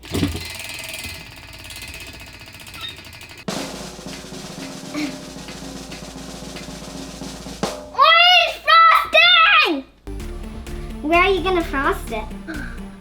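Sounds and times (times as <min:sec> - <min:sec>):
prize wheel spinning: 0:00.0 - 0:04.3
snare drum roll: 0:03.4 - 0:08.0.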